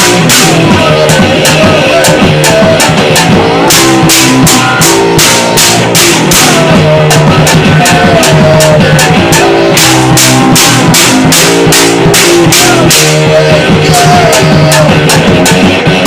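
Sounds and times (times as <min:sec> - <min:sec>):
bending guitar lead line: 0:00.0 - 0:16.0
distorted guitar chords: 0:00.0 - 0:16.0
drum kit pounding: 0:00.0 - 0:16.0.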